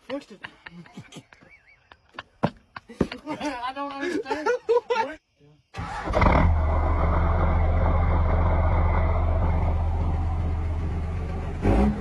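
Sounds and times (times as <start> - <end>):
diesel truck engine droning: 5.8 - 12.0.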